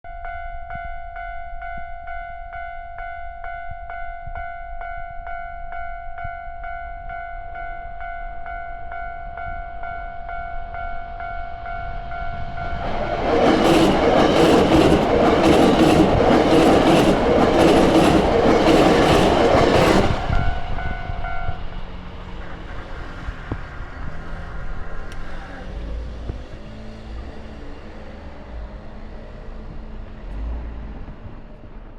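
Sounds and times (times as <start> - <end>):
electric train passing: 9.2 - 31.9
wheels clattering over rail joints: 12.7 - 28.1.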